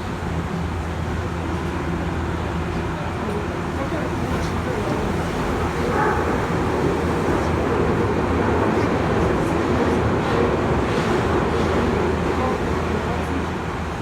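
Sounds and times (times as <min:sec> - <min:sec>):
train wheels rumbling on rail: 0:00.1 - 0:14.0.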